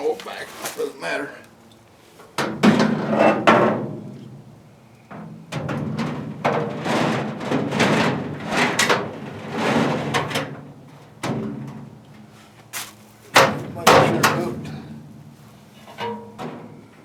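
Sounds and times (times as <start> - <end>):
metal shelf clanking and scraping: 2.4 - 4.0, 5.6 - 10.7, 15.8 - 16.8.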